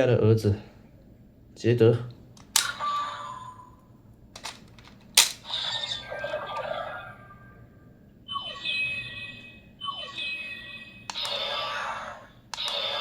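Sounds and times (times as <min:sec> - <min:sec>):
sharp plastic clicks: 0:02.4 - 0:02.8, 0:04.4 - 0:05.4
electronic sound effects from toy speaker: 0:08.3 - 0:13.0.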